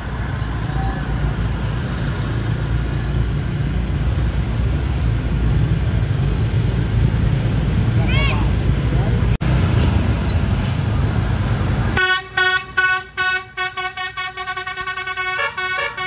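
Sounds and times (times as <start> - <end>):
vehicle engine rumbling: 0.0 - 16.0.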